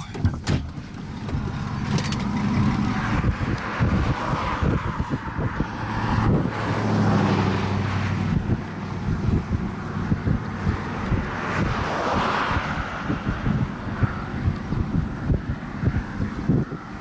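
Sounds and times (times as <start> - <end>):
vehicle engine hum: 0.0 - 17.0
wind buffeting microphone: 0.0 - 17.0.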